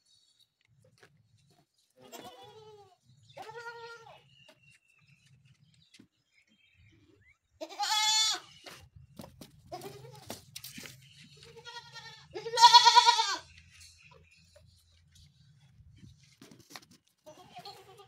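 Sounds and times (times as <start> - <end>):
goat kids bleating: 2.0 - 4.3, 7.6 - 8.6, 9.7 - 10.4, 11.4 - 13.5, 17.2 - 18.0.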